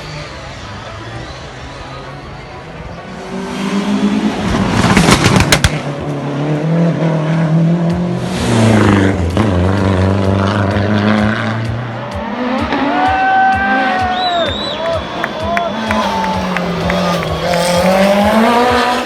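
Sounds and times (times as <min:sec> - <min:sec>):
rally car engine running: 0:03.1 - 0:19.0
engine sharp pops: 0:04.8 - 0:05.9.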